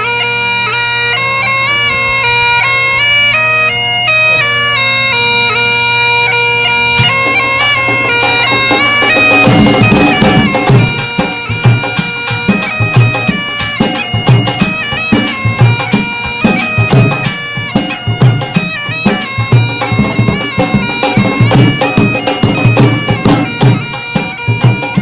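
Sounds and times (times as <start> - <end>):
bagpipe-like piping melody: 0.0 - 25.0
drum beat: 7.0 - 25.0.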